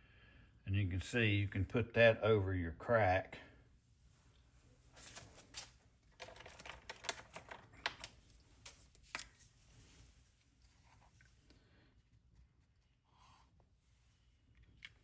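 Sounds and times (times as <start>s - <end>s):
plastic piece being handled: 5.0s - 9.9s.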